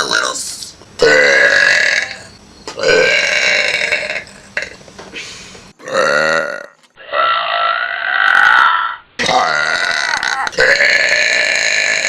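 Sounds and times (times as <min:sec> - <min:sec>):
loud long burps: 0:01.0 - 0:04.8, 0:05.8 - 0:12.0.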